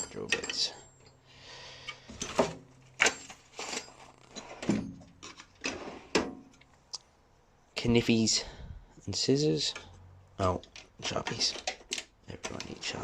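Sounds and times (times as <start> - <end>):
tools rattling: 0.0 - 6.7, 9.6 - 13.0.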